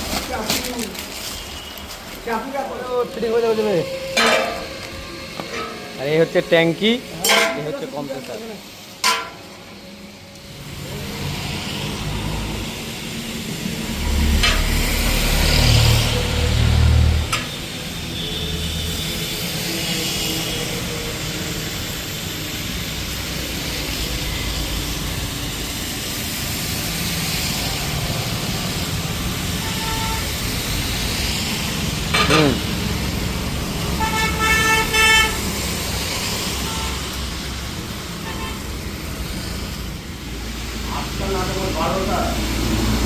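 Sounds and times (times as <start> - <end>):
street traffic noise: 0.0 - 43.0
vehicle horns honking: 29.6 - 30.4, 33.9 - 35.6, 36.5 - 37.2, 38.2 - 38.7.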